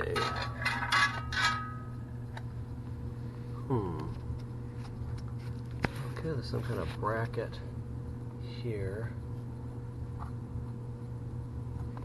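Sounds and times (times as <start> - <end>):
metallic clinks and scrapes: 0.0 - 1.8
steady low hum: 0.0 - 12.0.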